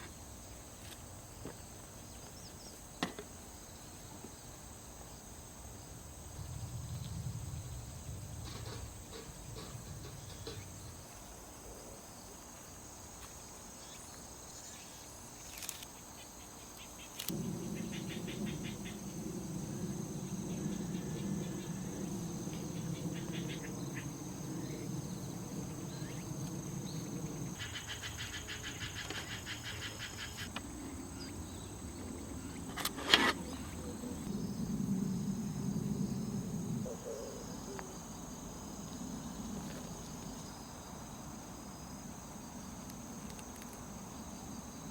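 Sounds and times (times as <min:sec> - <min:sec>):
insects chirping: 0:00.0 - 0:44.9
low steady hum: 0:16.5 - 0:28.5.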